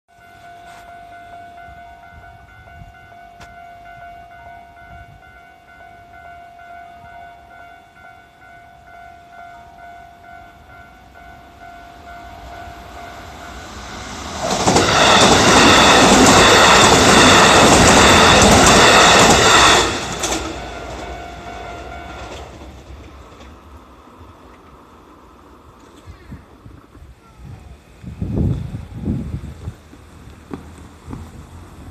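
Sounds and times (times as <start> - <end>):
crossing warning bell ringing: 0.1 - 23.0
electric train passing: 0.1 - 31.9.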